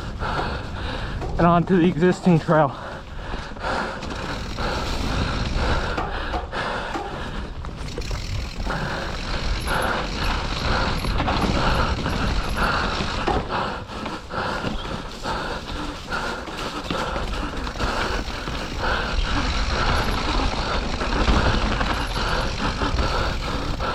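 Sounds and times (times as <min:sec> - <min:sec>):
bike rattling and knocking: 0:00.0 - 0:23.9
bike freehub ratcheting: 0:04.0 - 0:06.4, 0:07.4 - 0:13.4, 0:16.5 - 0:23.9.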